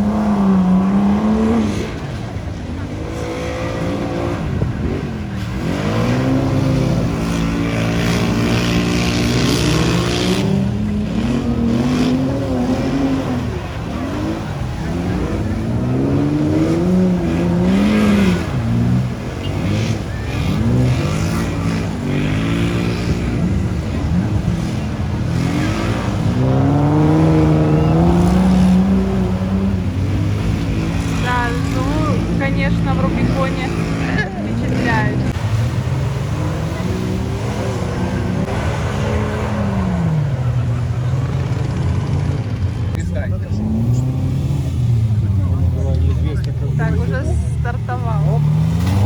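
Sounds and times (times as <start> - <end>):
off-road engines revving: 0.0 - 49.0.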